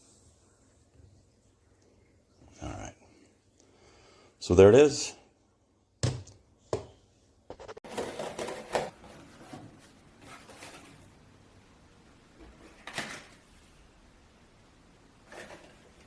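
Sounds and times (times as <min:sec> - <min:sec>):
objects rustling and clattering: 0:06.0 - 0:11.2, 0:15.2 - 0:16.0.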